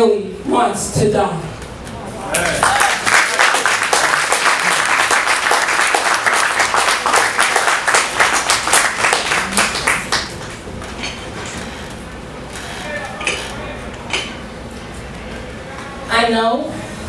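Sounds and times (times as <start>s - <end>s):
audience applauding: 2.3s - 11.1s.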